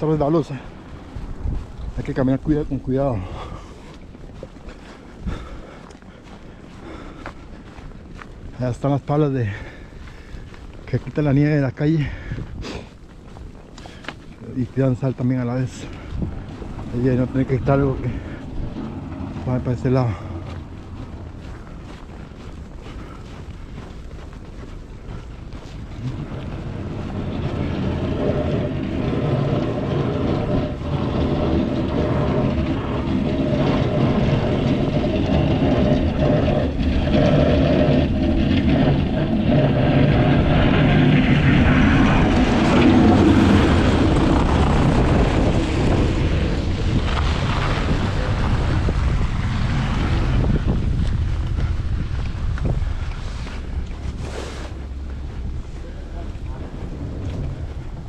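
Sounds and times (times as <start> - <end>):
wind buffeting microphone: 0.0 - 58.0
heavy truck engine passing: 15.2 - 58.0.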